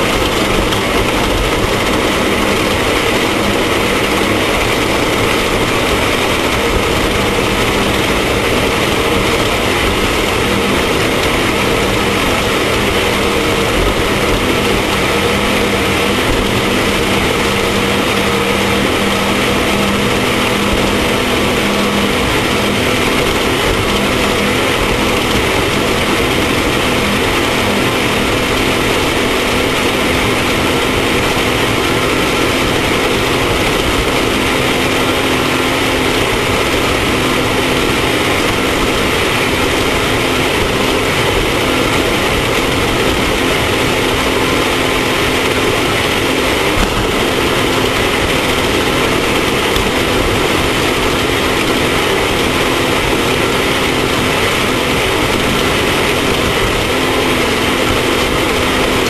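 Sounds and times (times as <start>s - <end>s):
race vehicle engine running: 0.0s - 59.0s.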